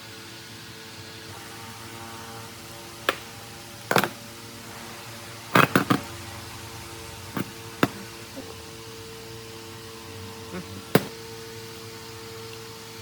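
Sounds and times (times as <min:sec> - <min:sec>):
sharp knocks: 0:07.4 - 0:08.1.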